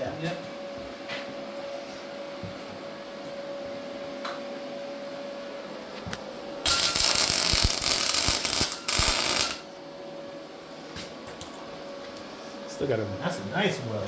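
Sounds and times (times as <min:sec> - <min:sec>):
welding arc crackling: 0:06.6 - 0:09.7.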